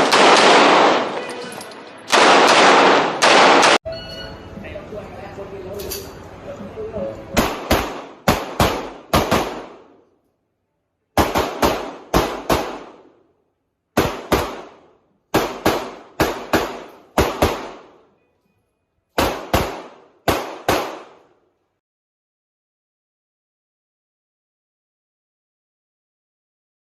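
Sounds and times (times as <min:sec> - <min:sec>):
handgun shots echoing: 0:00.0 - 0:03.8, 0:07.4 - 0:10.0.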